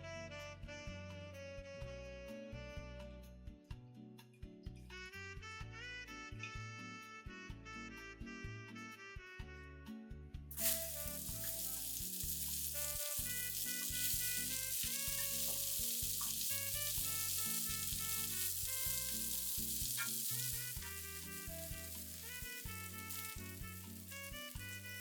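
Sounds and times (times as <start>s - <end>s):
background music: 10.4s - 25.0s
steady hiss: 10.5s - 25.0s.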